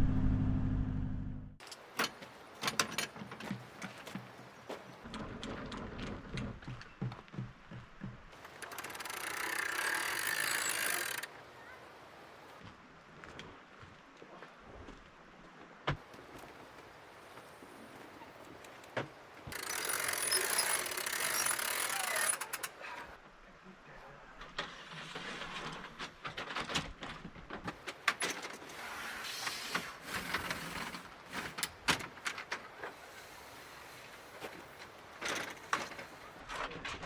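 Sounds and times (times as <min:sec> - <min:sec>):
metal mechanism clicking and rattling: 0:08.4 - 0:11.3, 0:19.5 - 0:23.1.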